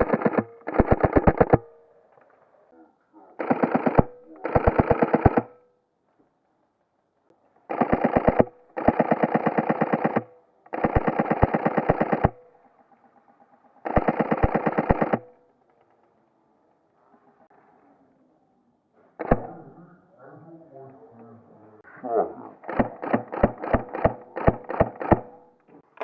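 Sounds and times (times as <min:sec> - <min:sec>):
airsoft rifle full-auto bursts: 0:00.0 - 0:01.7, 0:03.4 - 0:05.6, 0:07.7 - 0:12.5, 0:13.8 - 0:15.4, 0:22.6 - 0:25.4.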